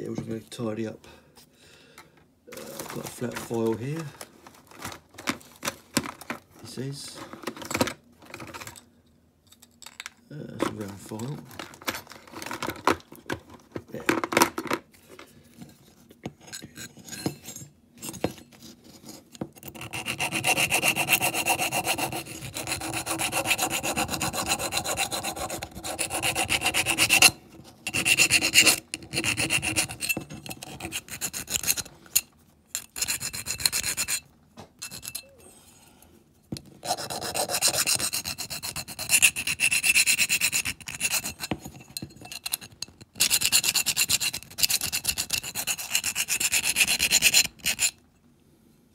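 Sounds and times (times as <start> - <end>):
file rasping on metal: 19.6 - 31.9, 32.8 - 34.2, 34.8 - 35.3, 36.8 - 48.0.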